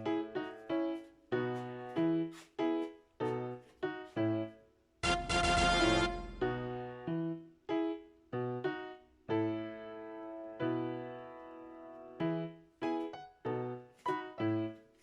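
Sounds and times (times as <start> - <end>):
keyboard tune: 5.0 - 7.0.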